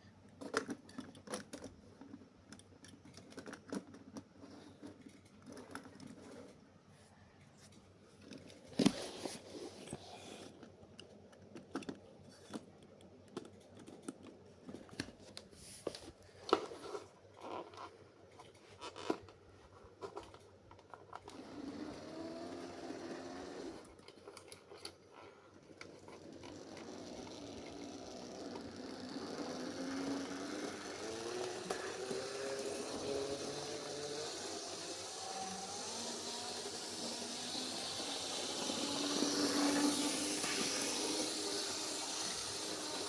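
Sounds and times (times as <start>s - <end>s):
model train motor whirring: 21.2s - 24.5s, 25.8s - 43.0s.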